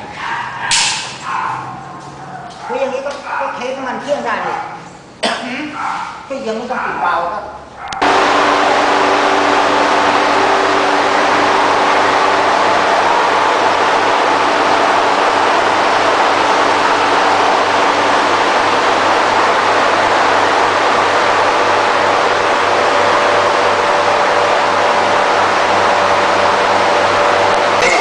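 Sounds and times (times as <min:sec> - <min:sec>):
engine running steadily: 0:08.0 - 0:28.0.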